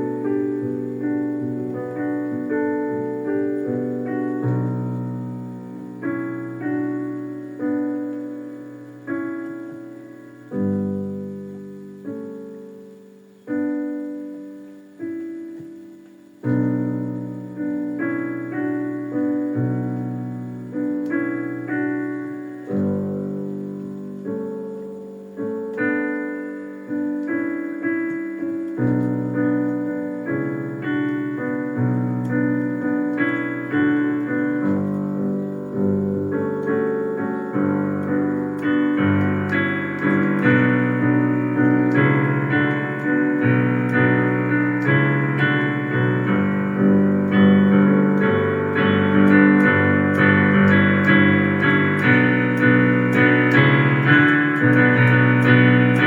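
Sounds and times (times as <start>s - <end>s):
keyboard playing chords: 0.0s - 56.0s.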